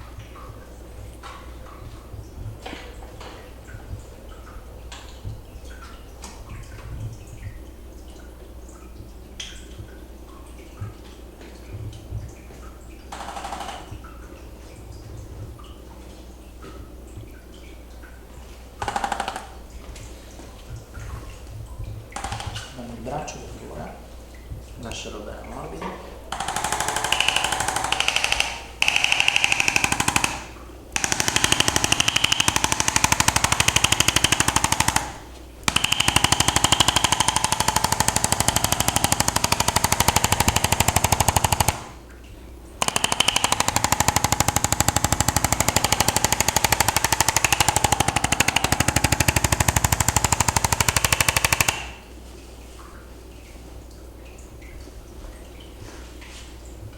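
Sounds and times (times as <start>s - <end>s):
massage gun hammering: 18.8s - 19.5s, 26.3s - 42.1s, 42.8s - 52.1s.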